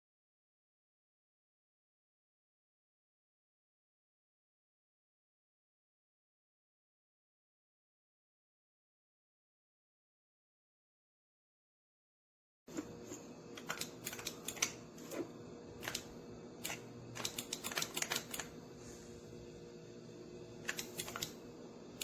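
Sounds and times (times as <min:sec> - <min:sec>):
faint steady hum: 0:12.7 - 0:22.0.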